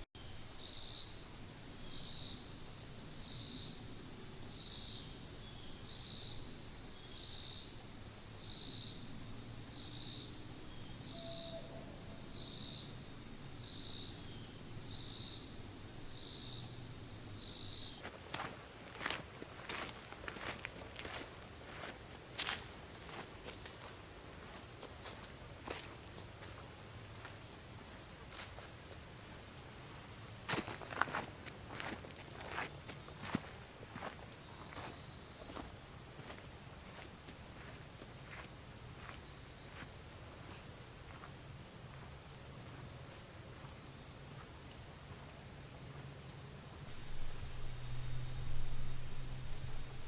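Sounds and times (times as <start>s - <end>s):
crickets droning: 0.2s - 50.0s
high-pitched insect chorus: 0.2s - 50.0s
footsteps: 18.0s - 27.4s, 30.5s - 39.2s, 46.9s - 50.0s
low hum: 46.8s - 50.0s.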